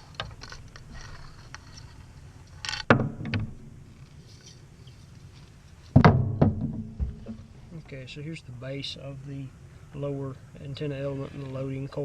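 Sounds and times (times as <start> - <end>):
antenna parts scraping: 0.0 - 2.9, 3.5 - 6.0, 10.8 - 12.0
antenna parts knocking: 2.7 - 4.1, 5.9 - 7.6.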